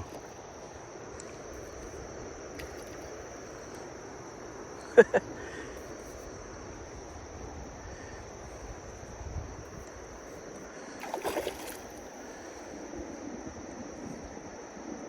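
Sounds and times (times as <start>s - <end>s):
wind rumbling on microphone: 0.0s - 4.7s, 5.8s - 15.0s
river water flowing: 0.0s - 9.2s, 9.9s - 13.6s
steady high hiss: 0.0s - 11.2s.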